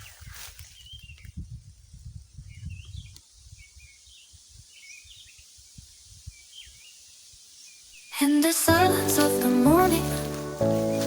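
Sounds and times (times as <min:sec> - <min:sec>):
small birds chirping: 0:00.0 - 0:08.7.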